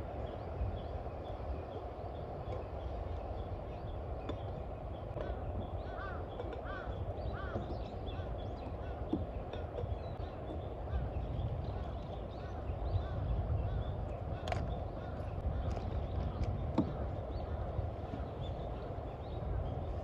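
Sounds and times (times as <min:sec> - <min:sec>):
steady low rumble: 0:10.0 - 0:20.0.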